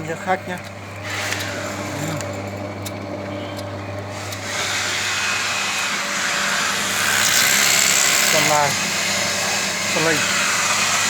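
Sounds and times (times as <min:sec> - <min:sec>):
electric motor humming: 0:00.0 - 0:11.0
rushing whirr: 0:00.9 - 0:11.0.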